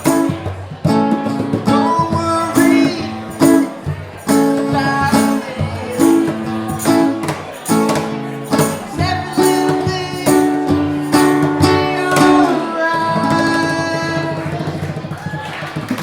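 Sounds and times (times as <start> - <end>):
acoustic strings strumming: 0.0 - 15.3.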